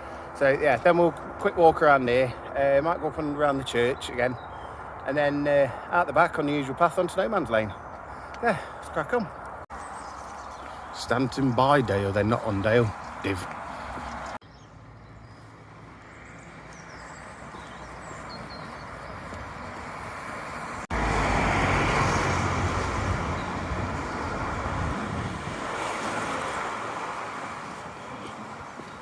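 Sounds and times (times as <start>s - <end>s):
vehicle passing: 12.4s - 29.0s.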